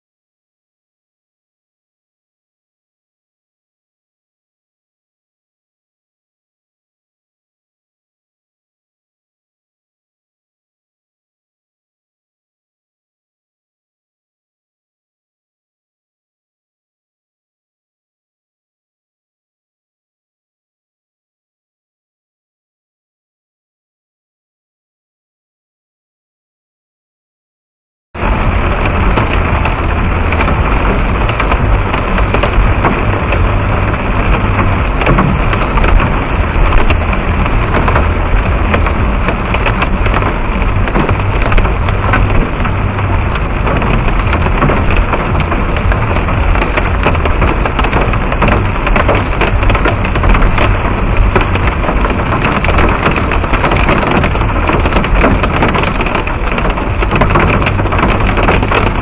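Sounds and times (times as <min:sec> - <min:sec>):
hail and rain on hard surfaces: 0:28.2 - 0:59.0.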